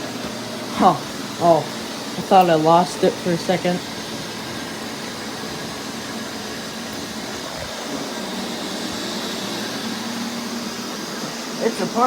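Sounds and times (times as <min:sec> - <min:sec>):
robot vacuums whirring on carpet: 0:00.0 - 0:12.0.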